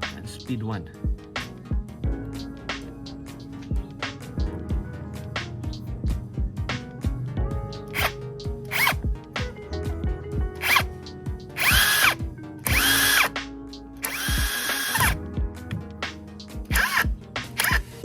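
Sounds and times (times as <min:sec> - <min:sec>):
background music: 0:00.0 - 0:18.0
impact driver driving screw: 0:07.9 - 0:09.0, 0:10.6 - 0:10.9, 0:11.6 - 0:13.3, 0:14.0 - 0:15.2, 0:16.7 - 0:17.9.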